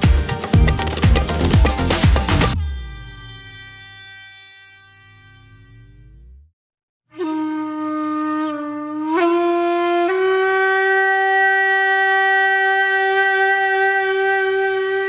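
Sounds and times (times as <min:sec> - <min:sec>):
sustained wind instrument note: 0:07.1 - 0:15.0.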